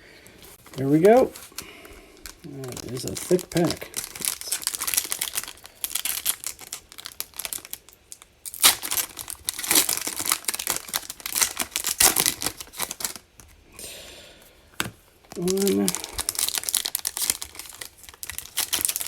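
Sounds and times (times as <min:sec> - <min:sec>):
card pack wrapper tearing: 0:02.2 - 0:13.3, 0:15.3 - 0:19.0.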